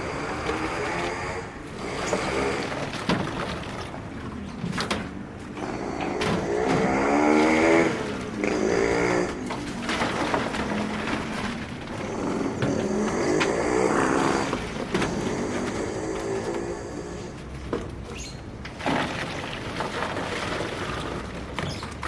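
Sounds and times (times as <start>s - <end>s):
motor engine revving: 0.0s - 3.5s, 5.5s - 19.2s.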